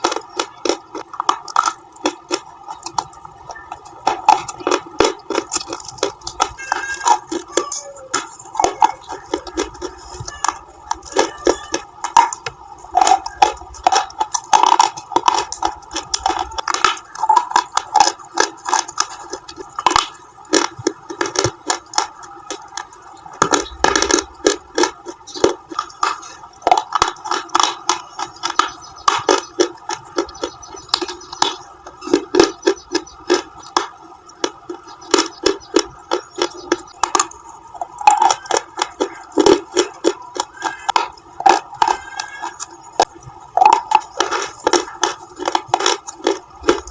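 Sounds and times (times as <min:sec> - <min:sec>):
chocolate bar crunching: 0:00.0 - 0:46.9.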